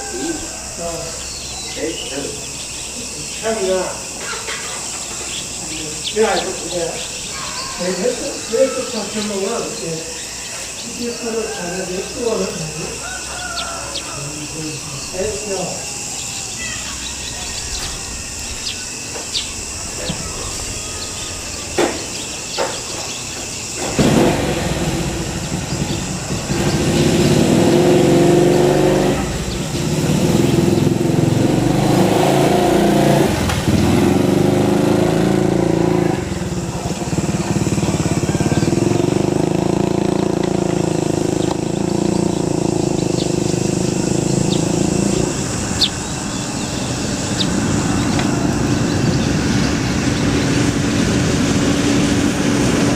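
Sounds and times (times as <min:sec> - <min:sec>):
engine running: 0:00.0 - 0:52.9
steady high hum: 0:13.9 - 0:29.9.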